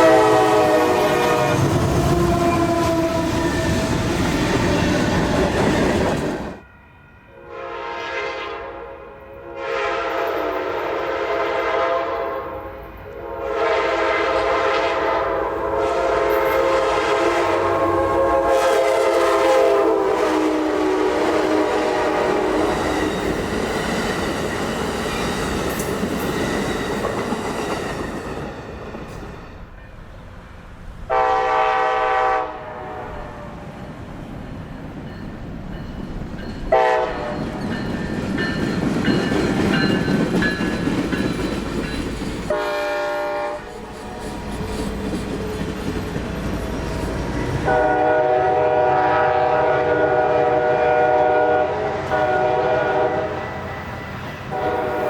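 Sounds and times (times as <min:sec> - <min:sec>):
train horn blasts: 0:00.0 - 0:04.0, 0:06.9 - 0:23.4, 0:31.1 - 0:33.6, 0:36.7 - 0:37.5, 0:42.5 - 0:44.7, 0:47.2 - 0:55.0
passing train rumbling: 0:00.0 - 0:55.0
wheels clacking over rail joints: 0:37.3 - 0:42.5.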